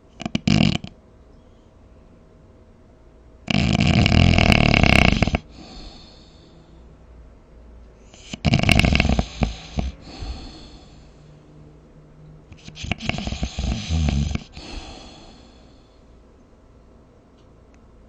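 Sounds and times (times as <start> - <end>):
person snoring: 0.2 - 0.9, 3.5 - 6.5, 8.2 - 11.2, 12.6 - 15.9.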